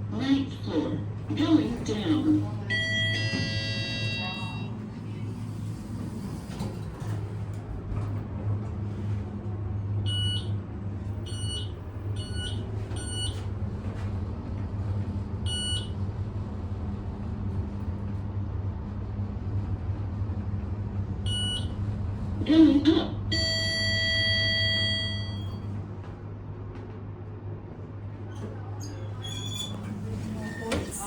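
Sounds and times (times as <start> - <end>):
elevator low hum: 0.0 - 31.0
elevator floor-passing beeps: 2.6 - 5.0, 10.0 - 14.2, 15.4 - 16.2, 21.2 - 22.0, 23.3 - 25.8.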